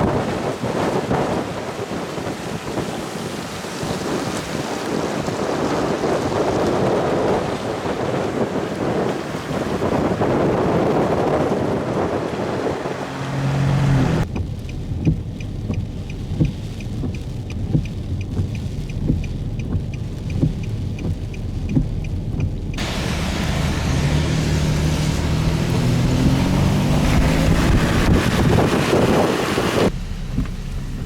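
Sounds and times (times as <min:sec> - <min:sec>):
hurricane wind: 0:00.0 - 0:31.0
rain beating on vehicle: 0:00.0 - 0:31.0
vehicle engine: 0:11.8 - 0:31.0
dull thumps: 0:29.9 - 0:31.0.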